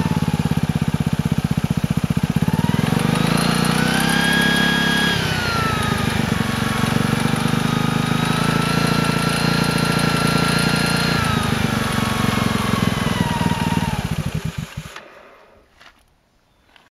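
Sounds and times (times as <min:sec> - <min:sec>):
scooter engine running: 0:00.0 - 0:15.9.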